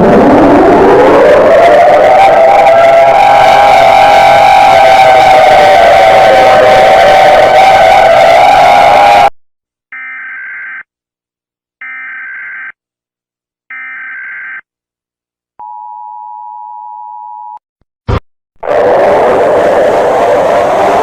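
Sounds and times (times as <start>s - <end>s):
loud noise: 0.0s - 9.3s, 18.1s - 21.0s.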